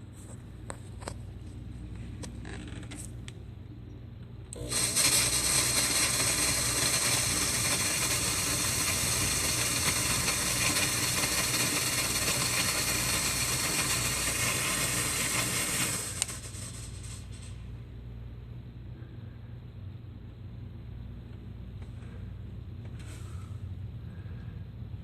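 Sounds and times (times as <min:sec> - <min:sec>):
smoke machine hissing: 0:04.6 - 0:17.8.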